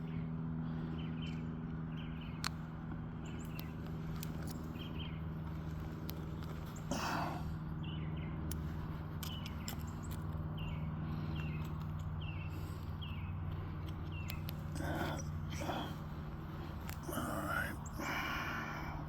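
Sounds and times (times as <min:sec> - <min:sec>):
steady low hum: 0:00.0 - 0:19.0
bird chirping: 0:04.4 - 0:08.5, 0:09.2 - 0:18.7.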